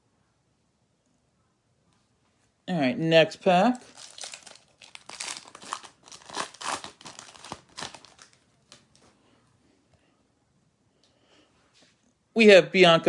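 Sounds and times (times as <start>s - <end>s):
wrapper being torn and crinkled: 3.7s - 9.0s.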